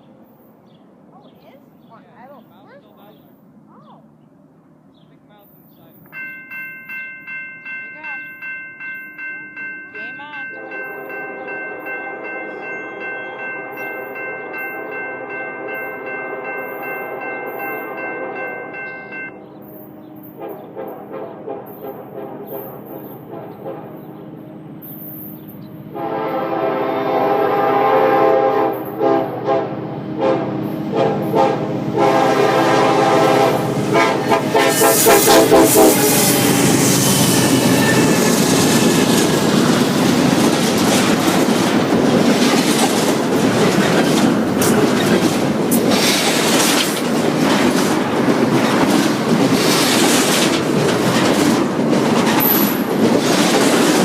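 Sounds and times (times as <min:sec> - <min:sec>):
train wheels rolling: 0:06.0 - 0:54.0
locomotive air horn blasts: 0:10.5 - 0:19.4, 0:20.2 - 0:24.0, 0:25.9 - 0:39.3.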